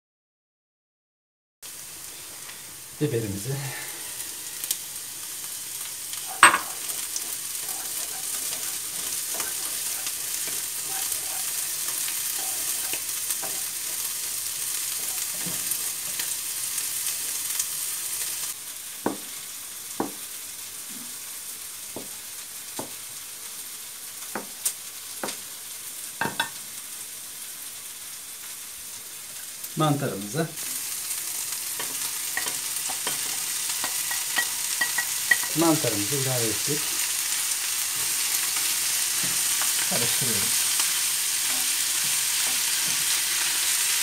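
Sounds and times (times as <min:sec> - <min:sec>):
vegetables sizzling in a pan: 0:01.6 - 0:44.0.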